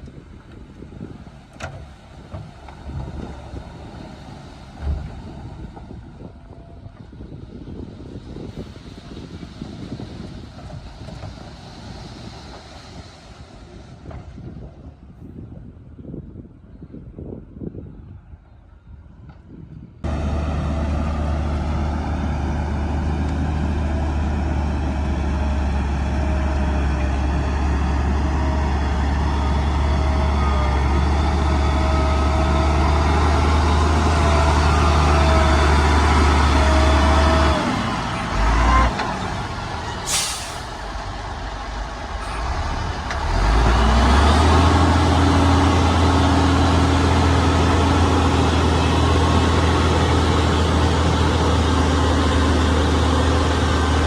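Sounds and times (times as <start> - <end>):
diesel machinery engine humming: 0.0 - 14.8, 20.0 - 54.0
sharp hiss of air: 40.1 - 41.0.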